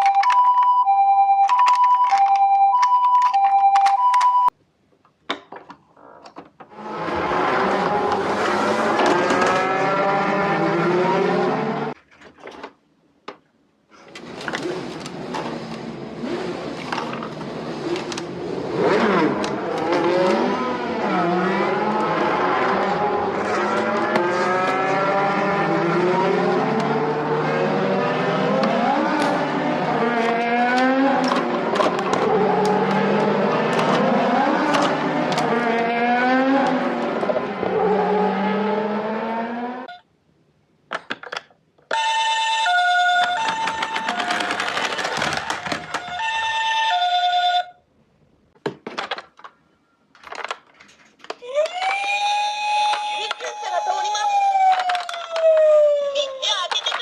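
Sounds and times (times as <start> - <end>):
two-tone ambulance siren: 0.0 - 4.5, 41.9 - 47.8, 51.7 - 56.3
toy cars whirring down a slope: 41.9 - 47.7.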